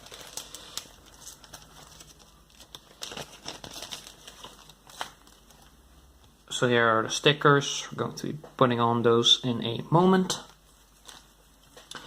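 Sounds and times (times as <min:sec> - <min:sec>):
packaging crinkling: 0:00.0 - 0:05.8, 0:10.4 - 0:12.0.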